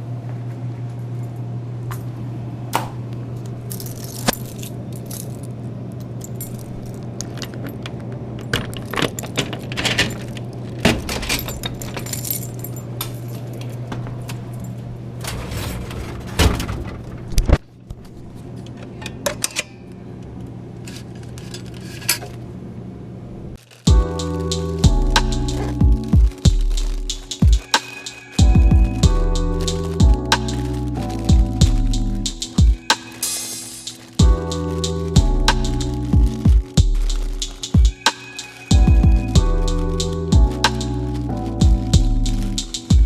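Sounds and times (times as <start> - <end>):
metallic clicks and clinks: 3.7 - 13.8
keys jangling: 3.7 - 14.8, 23.9 - 41.0
low hum: 28.4 - 32.9, 38.7 - 43.0.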